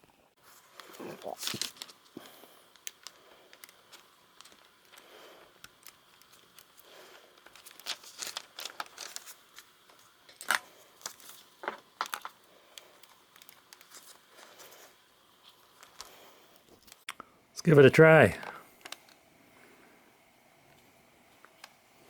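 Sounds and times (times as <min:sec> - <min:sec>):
plastic parts clicking and tapping: 0:02.7 - 0:06.8, 0:07.4 - 0:14.1.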